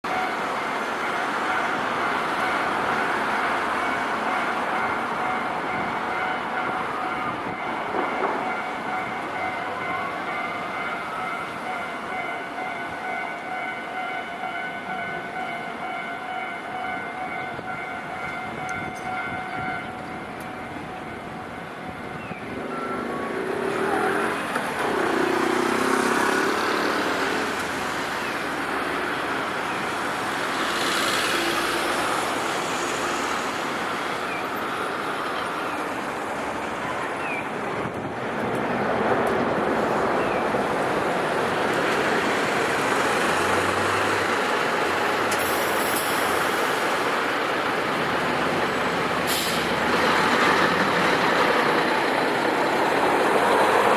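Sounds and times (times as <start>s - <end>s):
level crossing warning bell: 0.0s - 32.5s
road traffic driving past: 22.4s - 53.9s.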